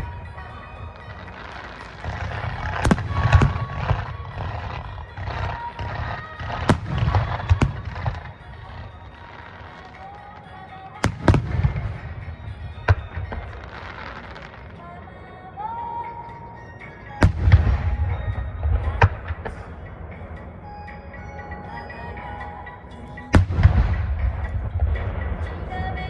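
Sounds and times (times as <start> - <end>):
firework shells bursting: 0.0 - 14.7
faint music: 0.0 - 26.0.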